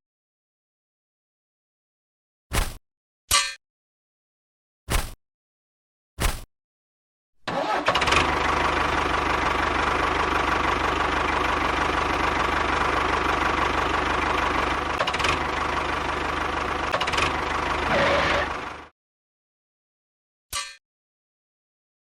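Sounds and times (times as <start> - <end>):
engine idling: 7.5 - 18.9.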